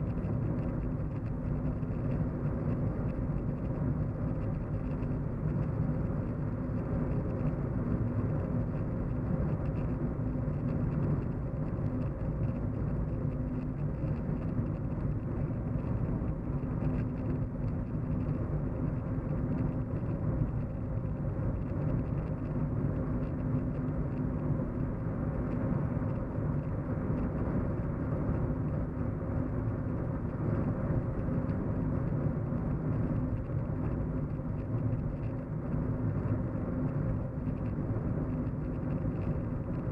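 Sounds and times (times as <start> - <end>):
faint steady drone: 0.0 - 39.9.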